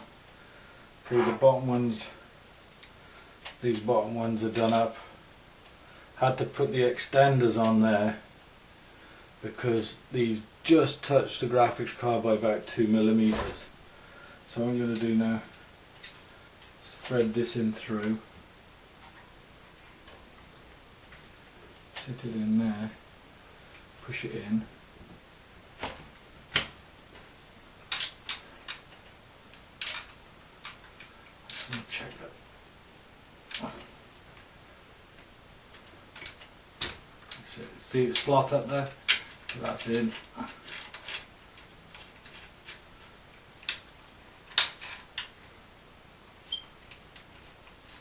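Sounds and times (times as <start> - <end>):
plastic and metal parts clicking: 27.9 - 31.9, 44.5 - 45.4.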